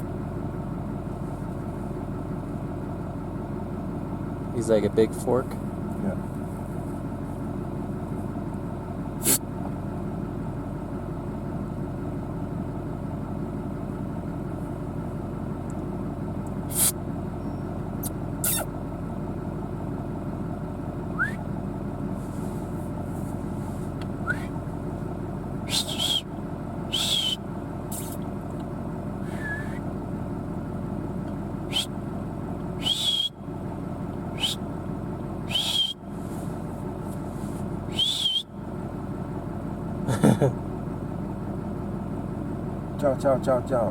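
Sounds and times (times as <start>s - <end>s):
vehicle engine idling: 0.0s - 43.9s
high whistling calls: 21.1s - 21.5s, 24.2s - 24.5s, 25.6s - 26.3s, 26.9s - 27.5s, 29.2s - 29.8s, 31.7s - 31.9s, 32.8s - 33.4s, 34.3s - 34.6s, 35.4s - 36.1s, 37.9s - 38.6s.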